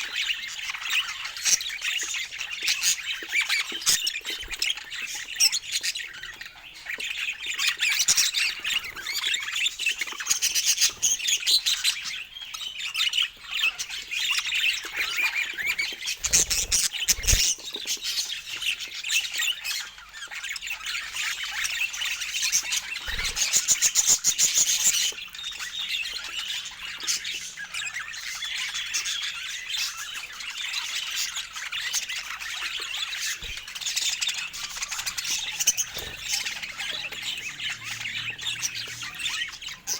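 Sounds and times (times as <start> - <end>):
budgerigars chattering and squawking: 0.0 - 39.9.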